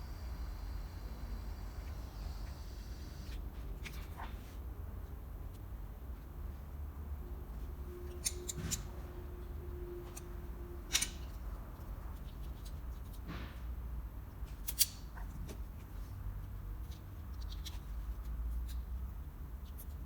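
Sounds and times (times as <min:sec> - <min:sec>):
hand tool clicks and snips: 0:10.9 - 0:11.3.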